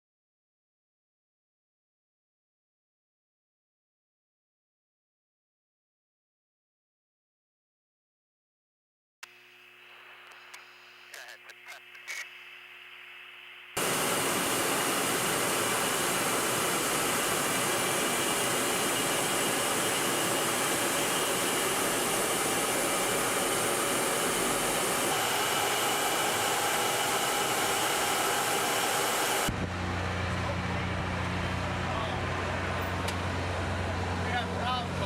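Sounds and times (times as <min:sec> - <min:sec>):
jet engine rushing: 0:13.8 - 0:34.8.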